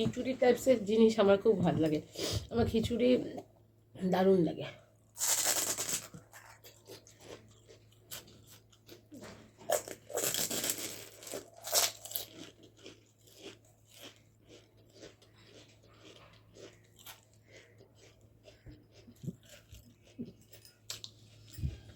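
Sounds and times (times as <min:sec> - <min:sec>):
crunching fried food: 0:05.1 - 0:21.9.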